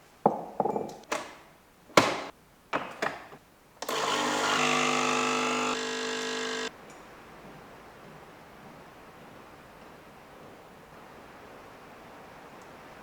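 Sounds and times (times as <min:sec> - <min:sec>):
coffee appliance motor running: 0:03.8 - 0:06.7.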